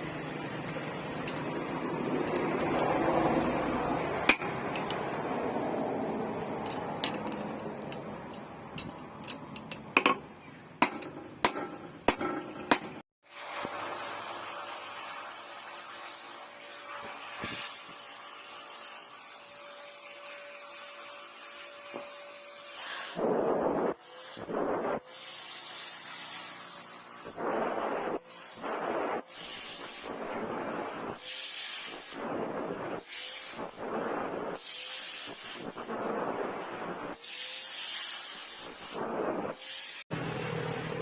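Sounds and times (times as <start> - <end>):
hammer striking hot steel: 4.2 - 5.3, 10.8 - 13.0.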